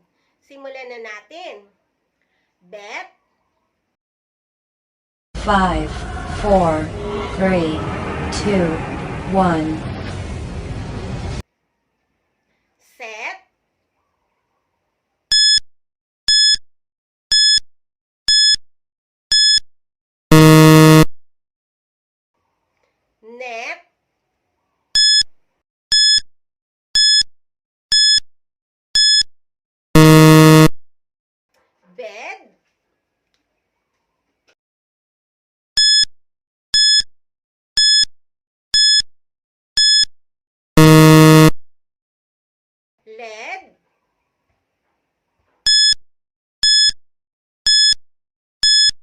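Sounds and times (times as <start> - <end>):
short high beeps: 18.3 - 18.6, 19.3 - 19.6, 20.3 - 21.1, 25.0 - 25.2, 25.9 - 26.2, 27.0 - 27.2, 27.9 - 28.2, 29.0 - 29.2, 30.0 - 30.8, 35.8 - 36.1, 36.8 - 37.0, 37.8 - 38.1, 38.8 - 39.0, 39.8 - 40.1, 40.8 - 41.6, 45.7 - 46.0, 46.6 - 47.0, 47.7 - 48.0, 48.6 - 49.0
low buzzer: 20.3 - 21.1, 25.9 - 26.2, 27.9 - 28.2, 29.0 - 29.2, 30.0 - 30.8, 38.8 - 39.0, 40.8 - 41.6, 46.6 - 46.9, 47.7 - 48.0, 48.6 - 48.9.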